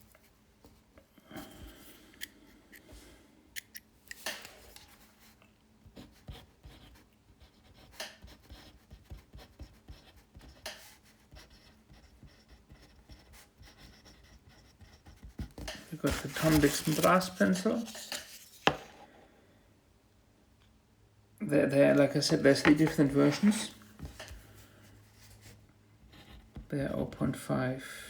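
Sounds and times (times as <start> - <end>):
pencil clicks and taps: 7.7 - 17.0
soft rubbing and scratching: 14.7 - 18.9, 21.9 - 26.7.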